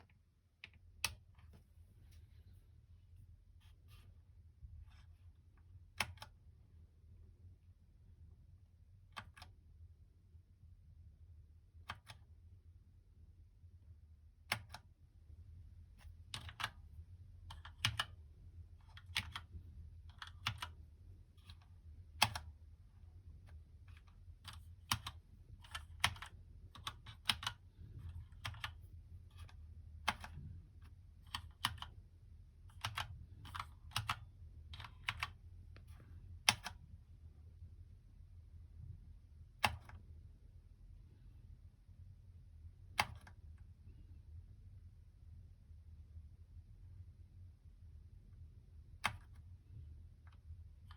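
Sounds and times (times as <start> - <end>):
mechanical keyboard key clicks: 36.4 - 36.8, 39.6 - 40.0, 43.0 - 43.4.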